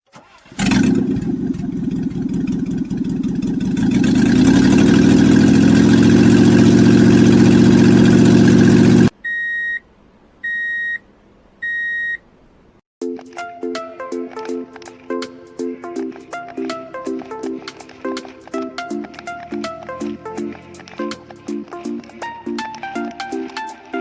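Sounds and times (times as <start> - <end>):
truck engine running: 0.5 - 9.1.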